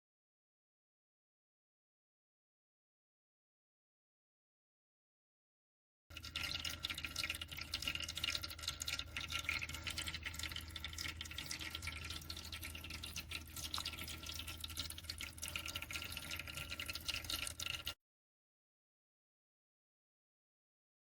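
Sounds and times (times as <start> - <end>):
small pump humming: 6.1 - 18.0
water trickling and dripping: 6.1 - 18.0.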